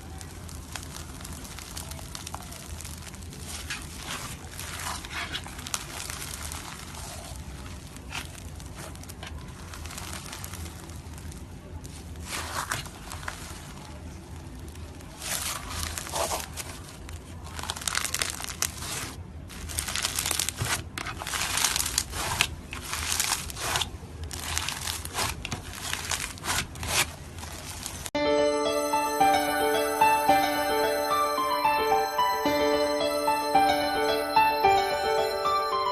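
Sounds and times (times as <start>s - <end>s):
slime squishing with crackling pops: 0.0s - 28.1s.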